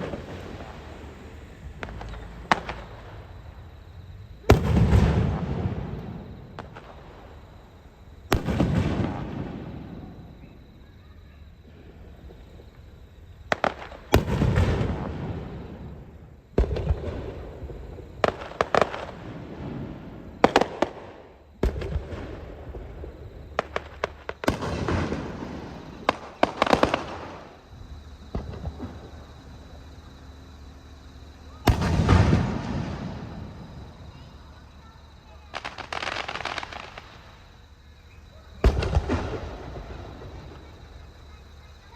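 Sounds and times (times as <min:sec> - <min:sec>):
rolling rumble: 0:00.0 - 0:10.8, 0:11.6 - 0:34.8
fireworks booming: 0:00.0 - 0:41.9.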